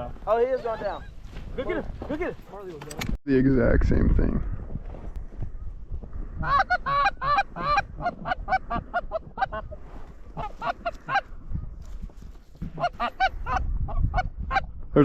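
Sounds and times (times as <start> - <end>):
goose honking: 6.4 - 9.8, 10.4 - 11.3, 12.8 - 13.6.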